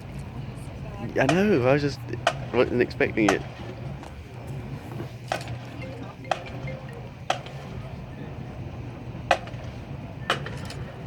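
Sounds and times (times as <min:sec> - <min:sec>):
faint crowd murmur: 0:00.0 - 0:11.0
low steady hum: 0:03.4 - 0:09.2
sharp clicks at steady tempo: 0:05.8 - 0:07.5.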